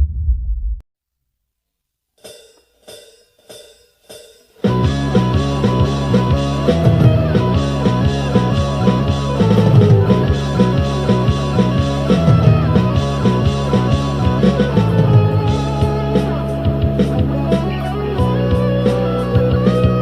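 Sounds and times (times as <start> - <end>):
rock music: 4.6 - 20.0.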